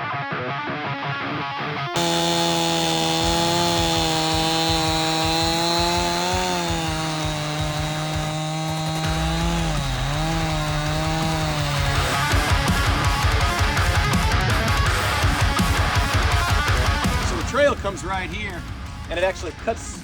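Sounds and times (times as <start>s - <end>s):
chainsaw running: 2.0s - 17.4s.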